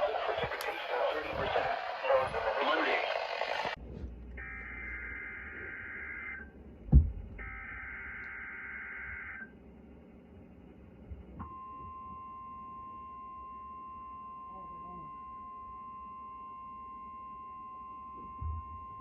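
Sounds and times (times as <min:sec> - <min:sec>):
steady warning alarm tone: 0:00.0 - 0:03.8, 0:04.4 - 0:06.5, 0:07.4 - 0:09.5
sharp thump: 0:06.8 - 0:07.4.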